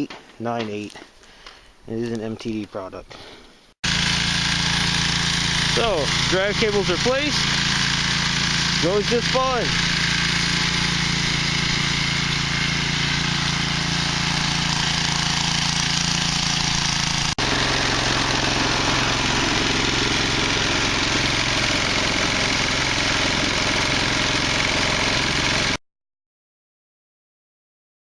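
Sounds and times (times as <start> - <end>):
snowblower engine running: 3.8 - 25.8.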